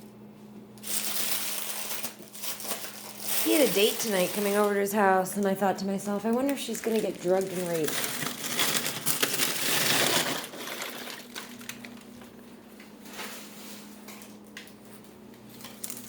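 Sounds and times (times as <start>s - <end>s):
steady low hum: 0.0s - 10.5s
loud crackling and crunching: 0.8s - 12.4s, 15.5s - 16.0s.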